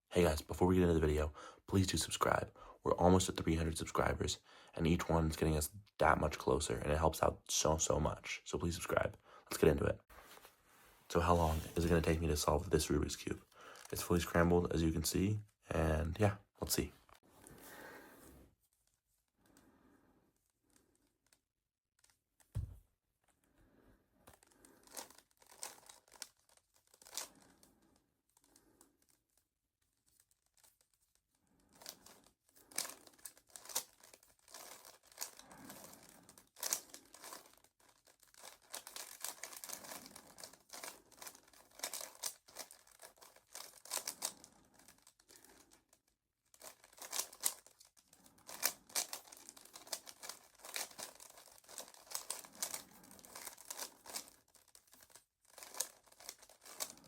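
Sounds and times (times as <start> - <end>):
plastic puzzle cube clicking: 24.8 - 27.4, 31.7 - 45.7, 46.5 - 57.0.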